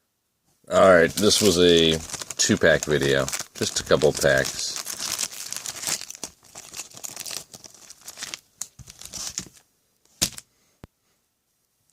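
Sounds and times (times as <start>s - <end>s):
wrappers crinkling: 0.8s - 9.6s.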